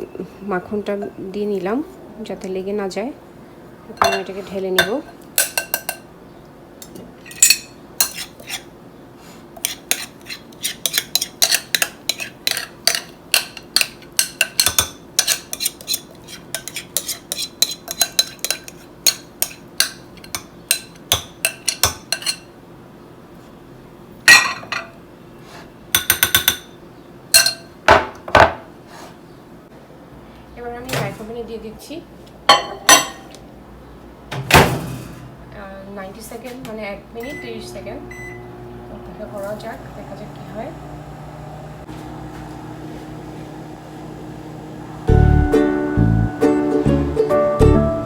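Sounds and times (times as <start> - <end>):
utensil scraping against a bowl: 7.2 - 22.5.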